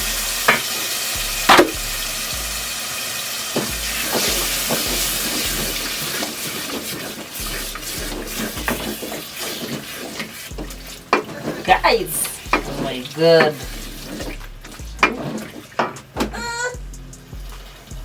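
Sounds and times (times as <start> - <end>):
food sizzling in frying pan: 0.0 - 16.2, 17.0 - 18.0
utensil knocking against pan: 6.9 - 16.4.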